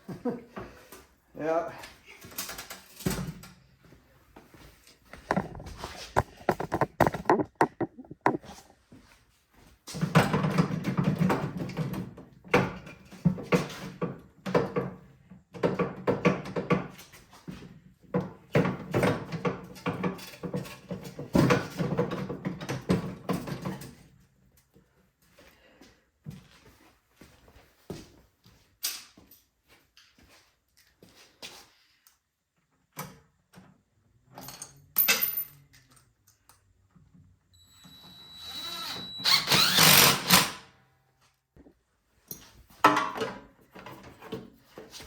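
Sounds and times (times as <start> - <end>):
metal parts and tools clanking: 5.2 - 8.7, 34.3 - 36.1.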